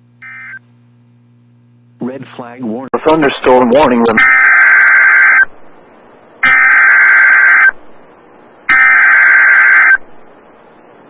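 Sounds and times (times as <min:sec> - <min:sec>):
harsh digital data buzzes: 0:00.2 - 0:00.6, 0:04.2 - 0:05.5, 0:06.4 - 0:07.8, 0:08.7 - 0:10.0.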